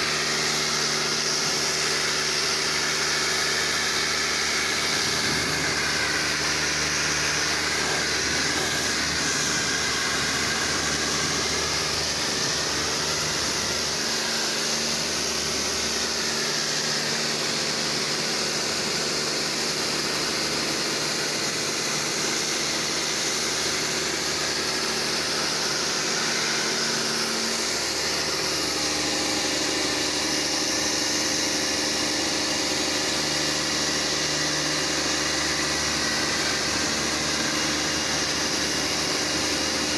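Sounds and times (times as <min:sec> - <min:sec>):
pressure washer spraying: 0:01.2 - 0:15.4.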